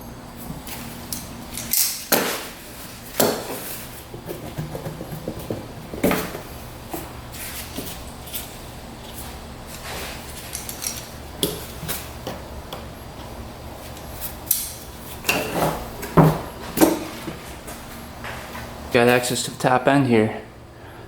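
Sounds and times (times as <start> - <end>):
faint steady hum: 0.0 - 21.0
tools and parts clicking and rattling: 0.7 - 2.6, 9.7 - 12.4, 13.9 - 17.4.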